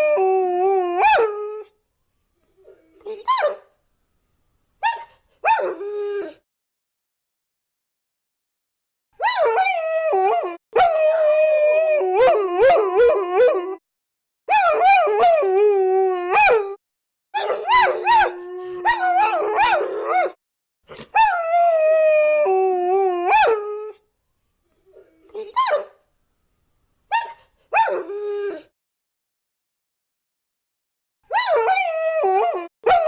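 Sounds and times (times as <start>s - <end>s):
dogs howling: 17.4s - 20.4s.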